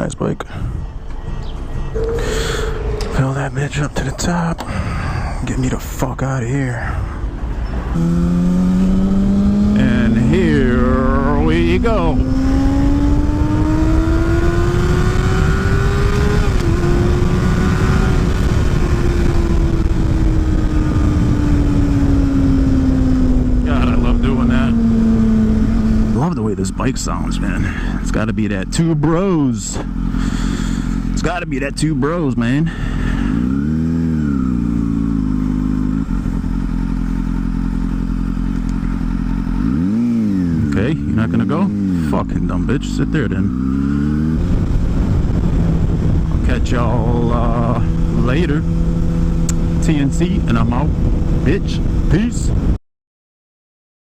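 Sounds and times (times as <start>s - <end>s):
motorcycle engine at high revs: 7.9s - 28.0s, 29.8s - 31.2s, 32.7s - 52.7s.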